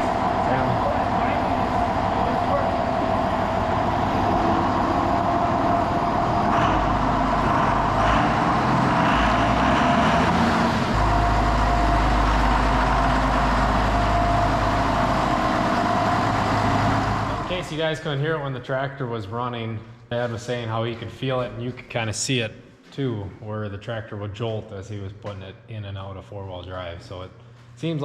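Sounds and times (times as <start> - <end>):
deep low rumble: 0.0 - 17.7
diesel tractor engine running: 0.0 - 17.8.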